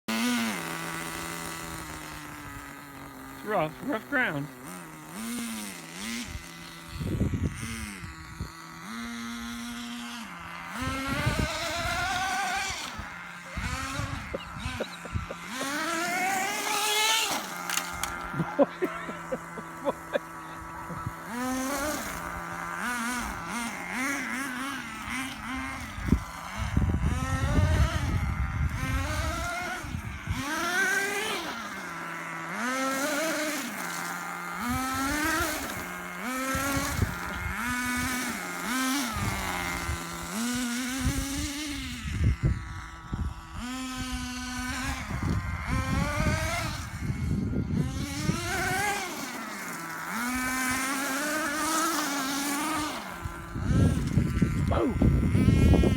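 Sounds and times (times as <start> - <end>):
model car engine revving: 0.0 - 55.9.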